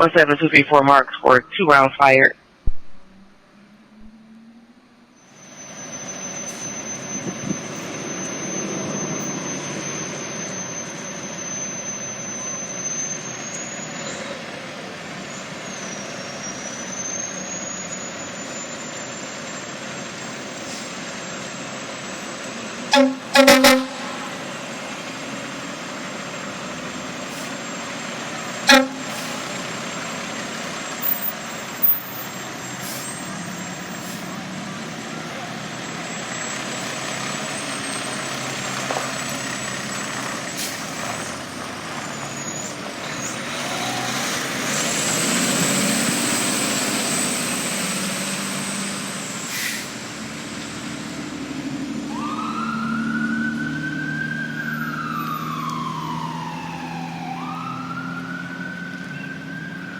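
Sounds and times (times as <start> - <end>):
truck engine and road noise: 0.0 - 59.9
air horn blasts: 22.9 - 24.7, 28.6 - 29.5.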